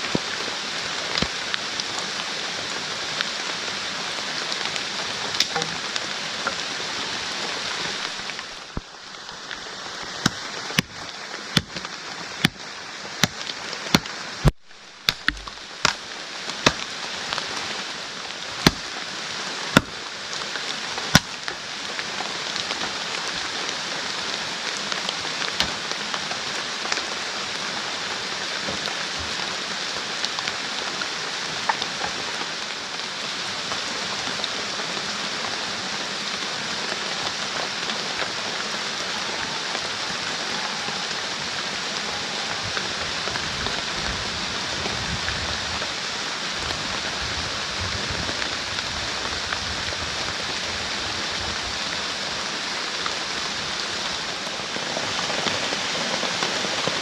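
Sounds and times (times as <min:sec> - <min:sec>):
heavy rain falling: 0:00.0 - 0:57.0
sharp knocks or clicks: 0:14.0 - 0:16.0.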